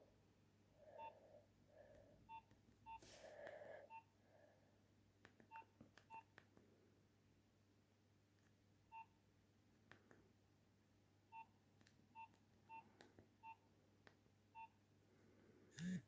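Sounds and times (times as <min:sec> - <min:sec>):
mobile phone keypad beeps: 0:05.5 - 0:06.3, 0:12.2 - 0:13.6, 0:14.6 - 0:14.8.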